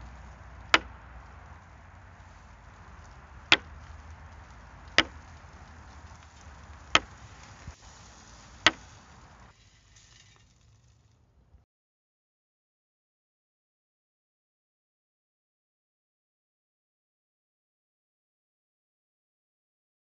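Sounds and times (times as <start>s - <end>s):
sharp short knocks: 0.0s - 6.0s.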